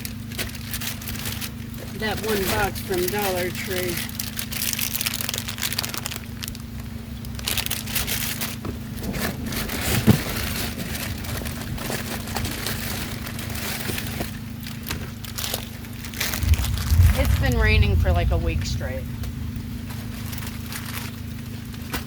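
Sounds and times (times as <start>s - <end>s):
plastic packets crinkling: 0.0s - 17.7s, 19.9s - 22.0s
low hum: 15.3s - 21.7s.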